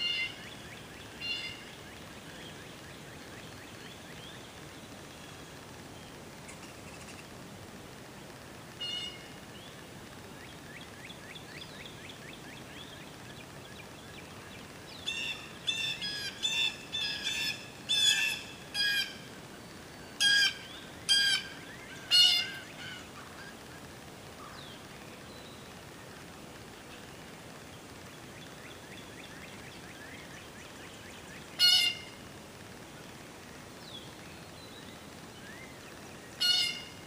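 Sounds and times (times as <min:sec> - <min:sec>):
bird calling loudly: 0:00.0 - 0:01.8, 0:08.8 - 0:09.3, 0:15.0 - 0:19.3, 0:20.2 - 0:23.6, 0:31.0 - 0:32.2, 0:36.4 - 0:37.0.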